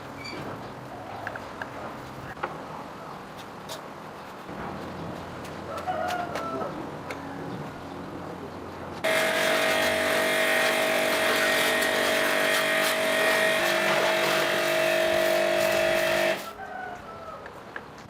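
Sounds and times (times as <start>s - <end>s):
electric power tool motor running: 9.0s - 16.5s.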